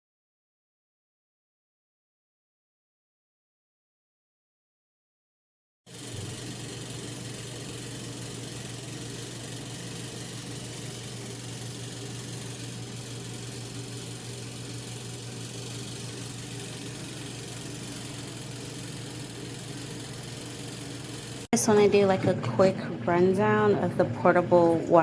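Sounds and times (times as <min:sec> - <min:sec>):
washing machine motor humming: 0:05.9 - 0:25.0.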